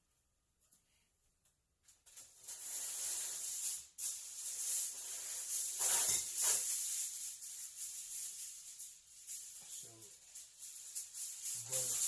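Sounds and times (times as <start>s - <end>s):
food sizzling in a frying pan: 2.4s - 12.0s.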